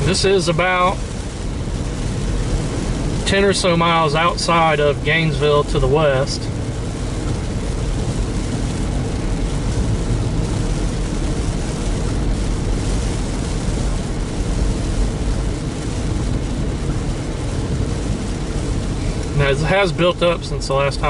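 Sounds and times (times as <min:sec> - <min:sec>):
car engine rumble: 0:00.0 - 0:21.0
tyres hissing on wet road: 0:00.0 - 0:21.0.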